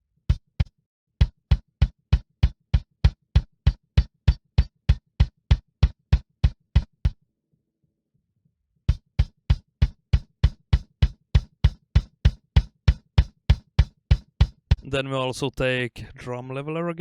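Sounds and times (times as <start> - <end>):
punchy kick drum hits: 8.9 - 14.9.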